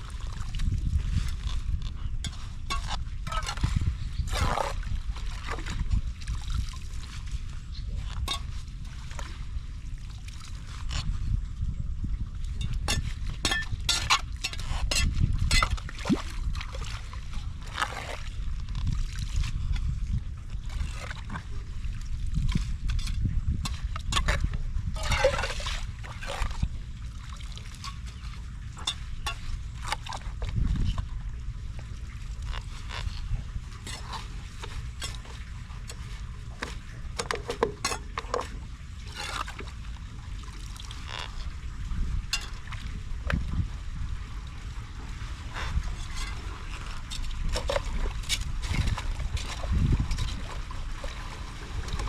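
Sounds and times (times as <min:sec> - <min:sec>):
floodwater sloshing at a drain: 0:00.0 - 0:11.4, 0:12.2 - 0:52.0
low rush of water: 0:24.2 - 0:52.0.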